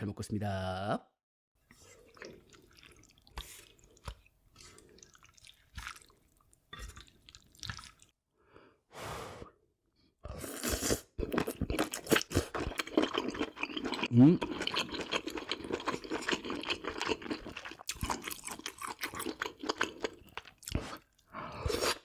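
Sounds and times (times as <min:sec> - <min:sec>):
chewing: 0:01.8 - 0:08.2, 0:10.7 - 0:21.3
wet slurps: 0:10.3 - 0:22.0.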